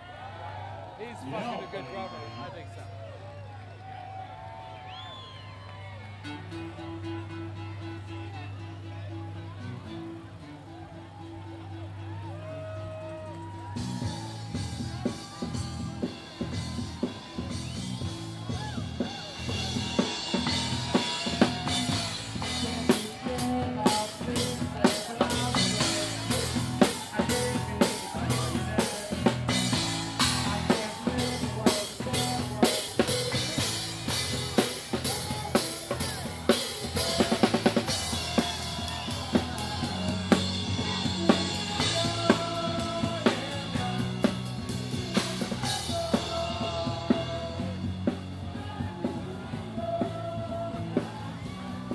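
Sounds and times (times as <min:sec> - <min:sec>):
fast drum roll: 0:13.4 - 0:51.9
drum kit played hard: 0:13.7 - 0:51.9.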